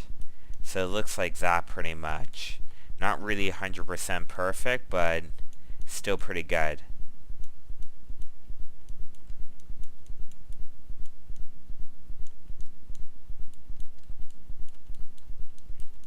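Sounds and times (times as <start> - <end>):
low pulsing hum: 0.0 - 16.0
mouse and keyboard clicks: 12.2 - 16.0.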